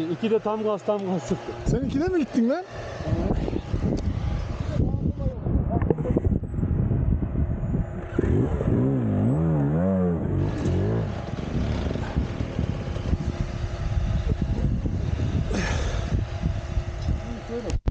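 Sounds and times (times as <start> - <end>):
vehicle engine under load: 5.9 - 17.9.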